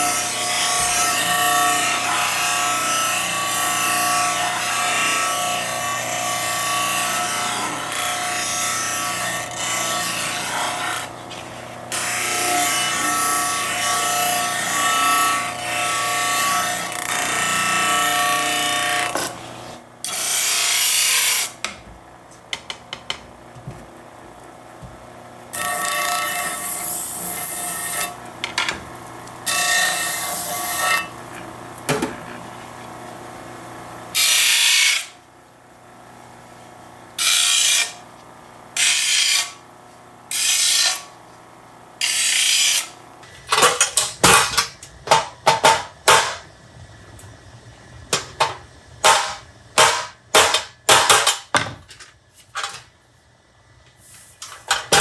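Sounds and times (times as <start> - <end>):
power tool cutting wood: 0.0 - 21.8, 24.8 - 35.3, 35.9 - 43.2.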